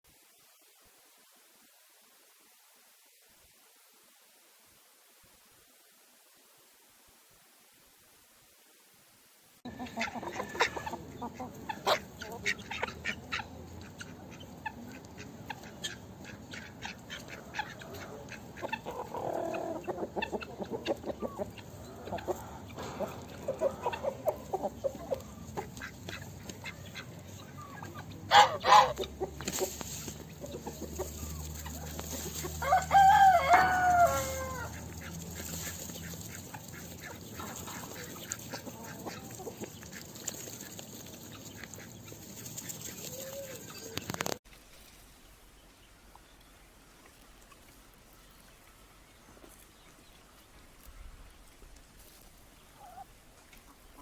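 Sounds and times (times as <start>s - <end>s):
chickens clucking: 9.6s - 44.4s, 46.0s - 54.0s
rooster crowing: 9.7s - 11.0s, 32.4s - 34.8s.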